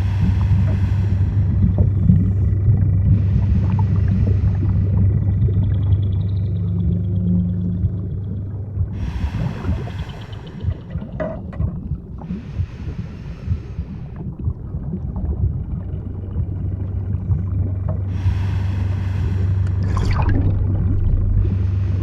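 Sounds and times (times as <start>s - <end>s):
breathing hiss: 0.0s - 5.0s, 9.0s - 11.1s, 12.2s - 14.3s, 18.1s - 22.0s
low underwater rumble: 0.0s - 22.0s
bubbling gurgle: 14.2s - 18.2s, 19.4s - 22.0s.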